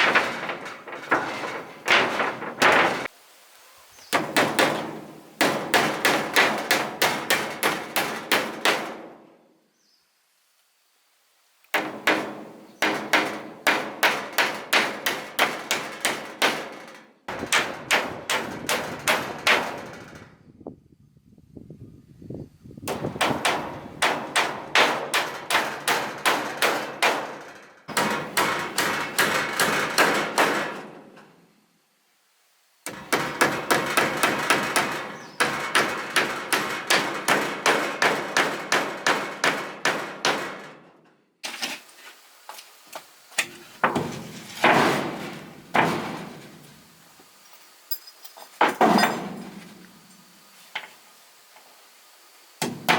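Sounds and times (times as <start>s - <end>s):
hammer nailing wooden boards: 0.0s - 3.1s, 4.1s - 9.2s, 11.8s - 20.2s, 22.9s - 31.2s, 32.9s - 40.9s, 43.8s - 46.7s, 52.6s - 52.9s.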